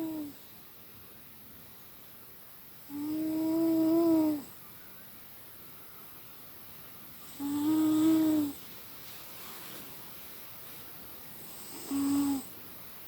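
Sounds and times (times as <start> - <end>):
faint steady hiss: 0.0 - 13.0
cat snoring with whistling tone: 2.9 - 4.5, 7.2 - 8.6, 11.4 - 12.5.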